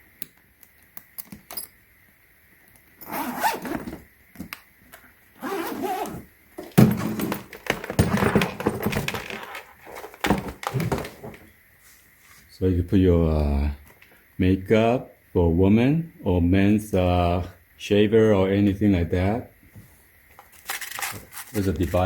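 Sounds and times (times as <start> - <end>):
suitcase zipper rasping: 3.0 - 4.1, 5.4 - 6.3.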